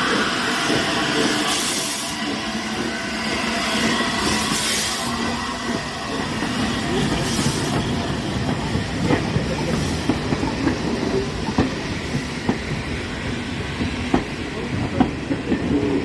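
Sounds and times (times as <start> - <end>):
steady train rumble: 0.0 - 16.0
train wheels clicking over rail joints: 0.1 - 16.0.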